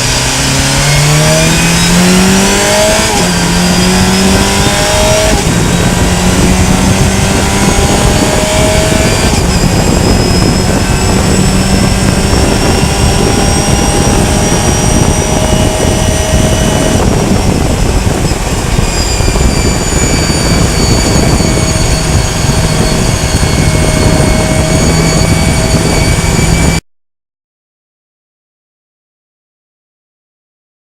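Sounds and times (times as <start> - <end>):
gear changes: 0.0 - 26.8
race car engine accelerating: 0.0 - 26.8
road and wind noise: 0.0 - 26.8.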